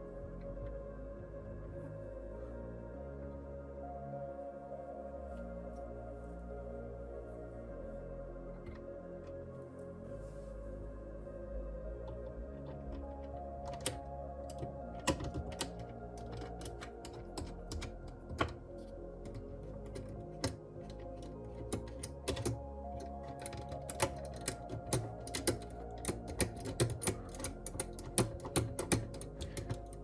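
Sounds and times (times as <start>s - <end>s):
background music: 0.0s - 30.0s
computer parts clicking and tapping: 12.6s - 18.6s, 19.2s - 30.0s.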